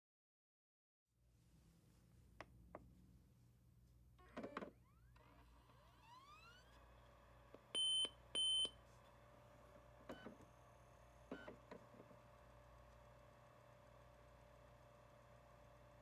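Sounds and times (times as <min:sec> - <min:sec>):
laptop spinning up whine: 0:04.8 - 0:16.0
steady computer hum: 0:05.9 - 0:16.0.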